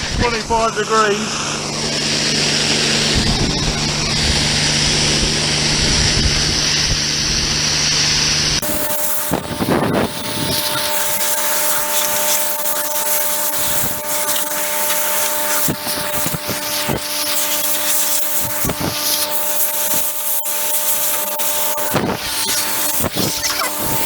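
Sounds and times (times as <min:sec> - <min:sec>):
air compressor hum: 0:00.0 - 0:24.0
compressed air blow gun hissing: 0:08.6 - 0:24.0.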